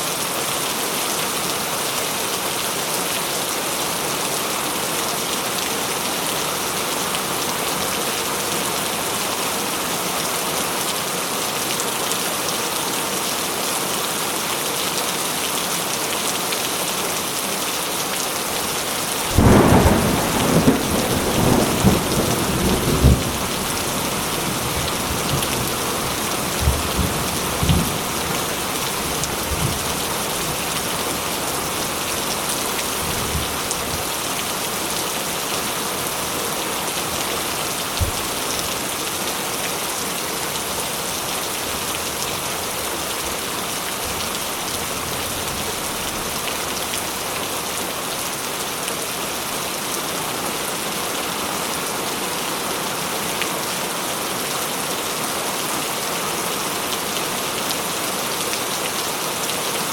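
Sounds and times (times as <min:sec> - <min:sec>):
steady rain: 0:00.0 - 0:59.9
thunder rumbling: 0:19.3 - 0:28.2.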